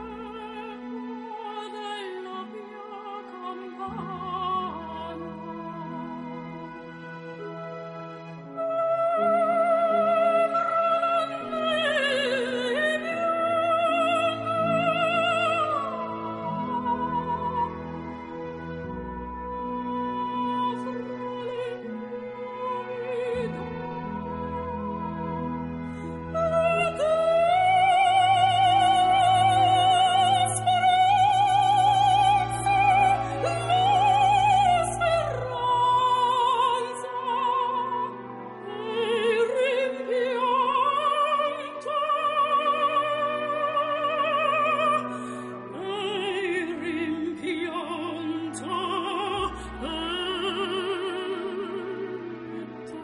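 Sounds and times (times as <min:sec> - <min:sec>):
classical accompaniment: 0:00.0 - 0:53.0
operatic singing: 0:00.0 - 0:53.0.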